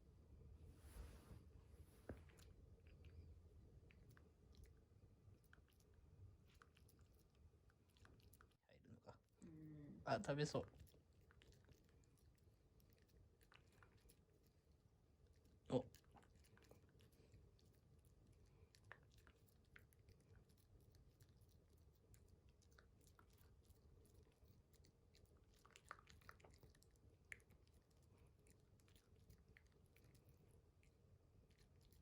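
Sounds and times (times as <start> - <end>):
puppy chewing: 1.9 - 9.4, 10.2 - 32.0.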